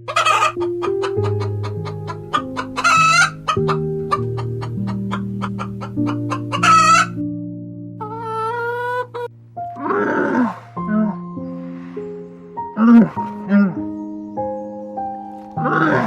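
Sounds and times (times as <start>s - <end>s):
background music of low notes: 0.0s - 16.0s
chicken clucking: 0.1s - 7.1s.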